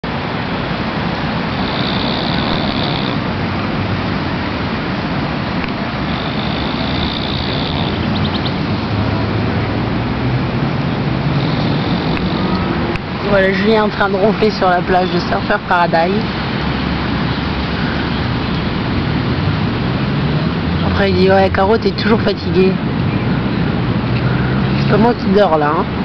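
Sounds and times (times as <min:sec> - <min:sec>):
beach wind: 0:00.0 - 0:26.0
man snoring: 0:01.6 - 0:03.2, 0:06.1 - 0:08.0, 0:11.4 - 0:12.5.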